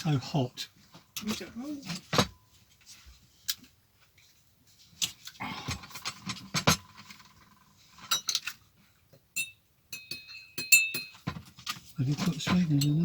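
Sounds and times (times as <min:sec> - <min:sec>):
crockery and cutlery clinking: 0:09.4 - 0:13.0.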